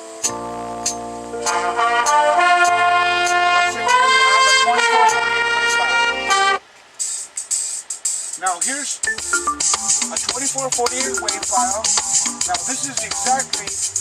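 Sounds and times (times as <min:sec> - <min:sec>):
brass-led rock music: 0:00.4 - 0:06.6, 0:09.1 - 0:14.0.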